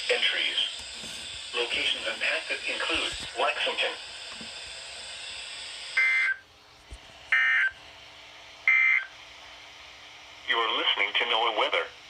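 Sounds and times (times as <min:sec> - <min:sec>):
radio hiss: 0:00.0 - 0:04.7, 0:10.4 - 0:12.0.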